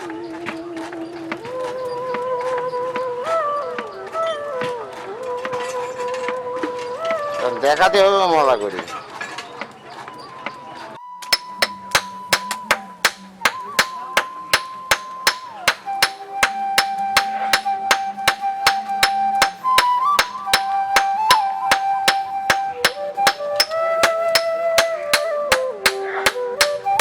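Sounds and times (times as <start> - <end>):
hammer striking iron on anvil: 11.3 - 27.0.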